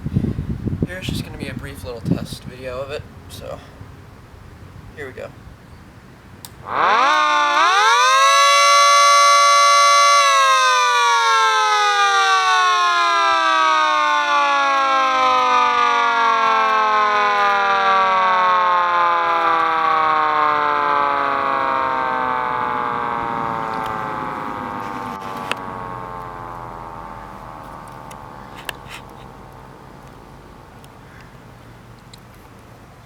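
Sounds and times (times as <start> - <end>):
two-tone siren winding down: 6.6 - 31.0.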